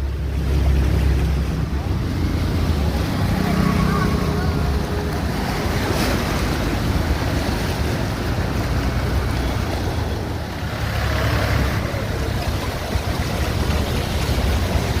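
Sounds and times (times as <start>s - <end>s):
vehicle engines: 0.0s - 15.0s
water splashing under vehicles: 0.0s - 15.0s
wind buffeting microphone: 4.4s - 15.0s.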